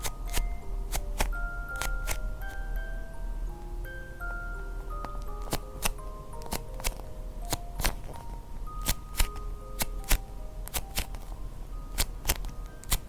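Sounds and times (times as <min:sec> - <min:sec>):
light background music: 0:00.0 - 0:13.0.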